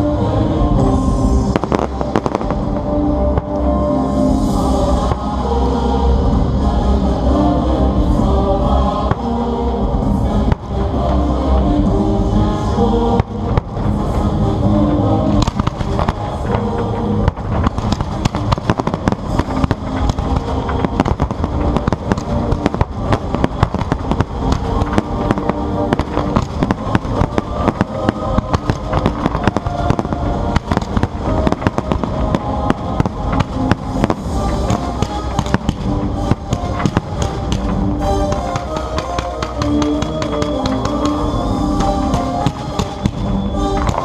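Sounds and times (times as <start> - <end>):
loud music: 0.0 - 44.0
fireworks bangs and crackles: 0.8 - 5.5, 10.4 - 11.7, 13.0 - 14.6, 15.2 - 44.0.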